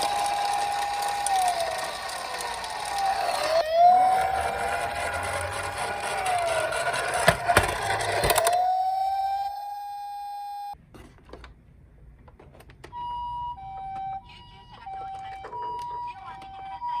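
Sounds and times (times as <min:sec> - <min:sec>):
rolling rattle: 0:00.0 - 0:08.5
toy siren wailing: 0:00.0 - 0:10.8, 0:13.0 - 0:17.0.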